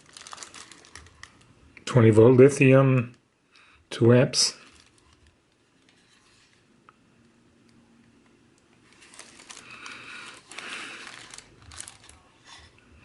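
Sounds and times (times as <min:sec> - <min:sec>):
plastic packaging crinkling: 0:00.0 - 0:01.6, 0:04.6 - 0:06.6, 0:08.8 - 0:12.7.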